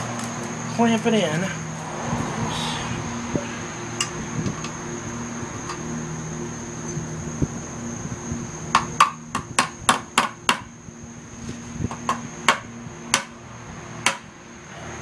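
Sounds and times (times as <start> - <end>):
hammer striking wood: 8.7 - 10.7, 12.0 - 13.3, 14.0 - 14.3.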